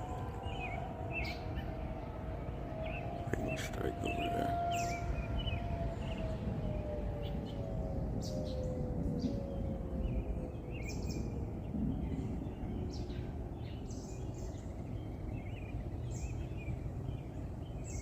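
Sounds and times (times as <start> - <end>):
birds chirping: 0.0 - 18.0
distant warning siren winding down: 0.0 - 18.0
low outdoor rumble: 0.0 - 18.0.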